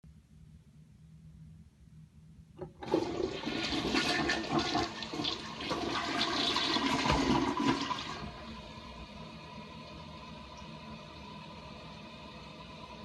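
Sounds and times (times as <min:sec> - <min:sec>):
toilet flush click: 0:02.6 - 0:08.5
toilet water rushing: 0:02.6 - 0:09.0.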